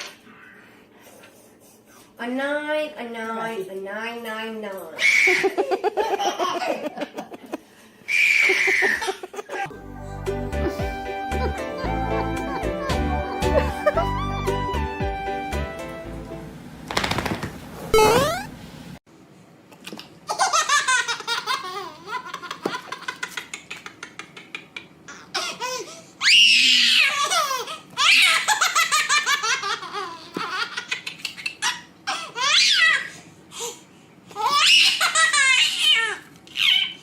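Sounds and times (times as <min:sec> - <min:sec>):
baby laughing: 0:05.2 - 0:07.2, 0:08.3 - 0:09.7, 0:11.2 - 0:14.3, 0:20.3 - 0:26.0, 0:26.8 - 0:33.2, 0:34.3 - 0:37.0.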